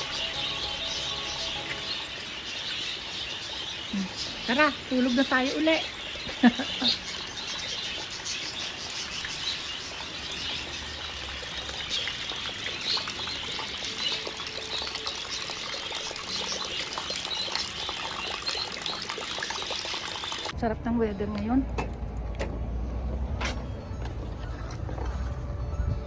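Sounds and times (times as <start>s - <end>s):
birds chirping: 0.0s - 20.5s
rain falling and dripping: 0.0s - 20.6s.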